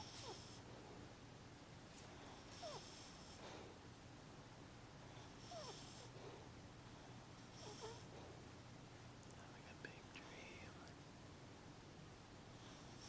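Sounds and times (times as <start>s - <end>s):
pet snoring softly: 0.0s - 0.7s, 2.3s - 3.7s, 5.2s - 6.2s, 7.4s - 8.2s, 12.5s - 13.0s.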